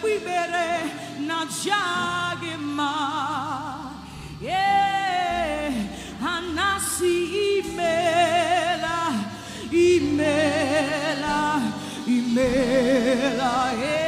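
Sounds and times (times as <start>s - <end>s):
gospel worship singing: 0.0s - 14.0s
sustained musical backing: 0.0s - 14.0s.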